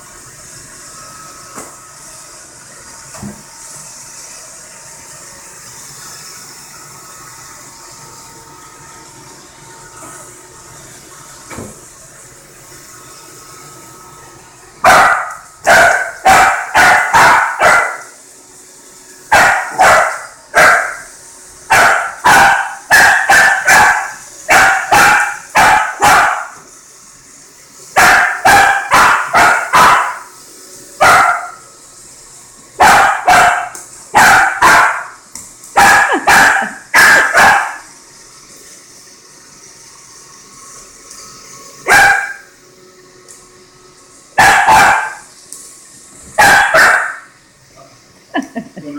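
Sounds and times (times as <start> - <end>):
robot vacuum humming: 0.0 - 48.9
dog barking: 14.8 - 18.1, 19.3 - 21.0, 21.7 - 26.6, 28.0 - 30.3, 31.0 - 31.6, 32.8 - 35.2, 35.8 - 37.9, 41.9 - 42.4, 44.4 - 45.2, 46.4 - 47.3.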